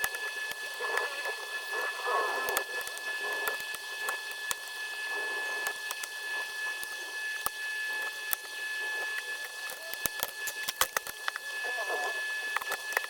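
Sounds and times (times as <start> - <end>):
high-pitched whine: 0.0 - 13.0
tools and plastic parts clicking: 9.6 - 11.4, 12.5 - 13.0.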